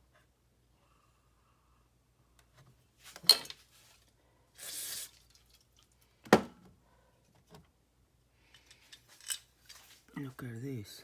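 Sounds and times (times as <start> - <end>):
tools clinking: 3.2 - 3.6, 8.5 - 10.0.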